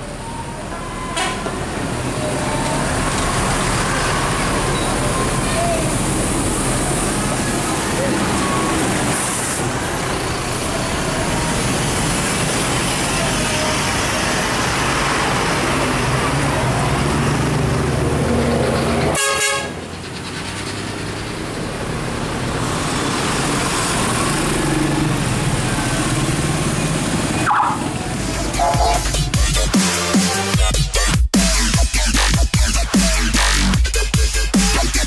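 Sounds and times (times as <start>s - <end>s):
coach engine rumble: 0.0s - 31.1s
road noise: 0.0s - 35.0s
horn notes: 19.1s - 19.8s, 28.4s - 30.7s.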